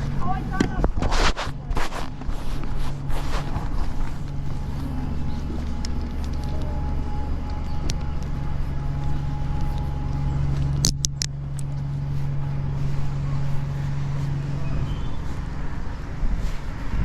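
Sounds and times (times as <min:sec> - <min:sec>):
vehicle engine humming: 0:00.0 - 0:17.0.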